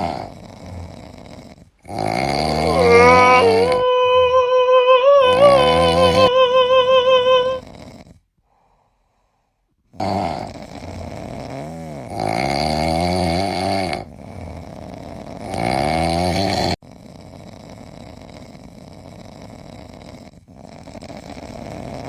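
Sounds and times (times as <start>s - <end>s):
cat snoring: 0.0s - 4.0s, 7.6s - 8.3s, 9.9s - 22.0s.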